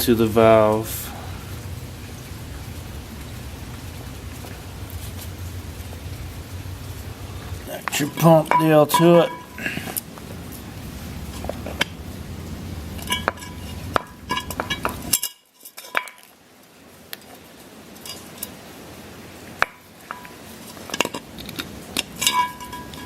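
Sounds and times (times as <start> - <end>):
low background hum: 0.0 - 15.3, 19.8 - 23.0
light metallic clinks: 7.3 - 12.0, 12.8 - 16.2, 22.0 - 23.0.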